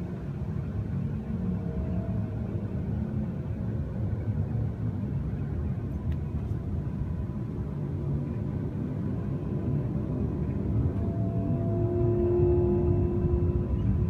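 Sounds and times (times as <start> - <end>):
faint steady tone: 0.0 - 14.0
low rumbling drone: 0.0 - 14.0.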